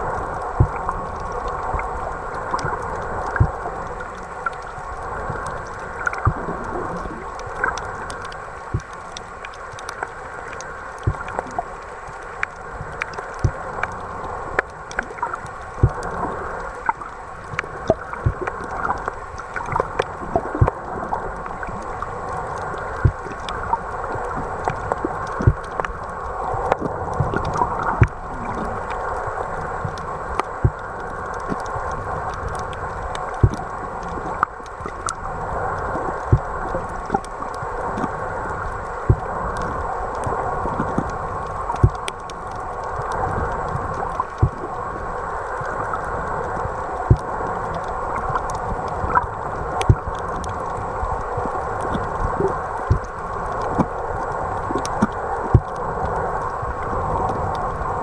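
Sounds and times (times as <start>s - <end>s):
muffled underwater noise: 0.0s - 58.0s
sharp clicks and pops: 41.7s - 42.3s, 52.8s - 54.0s.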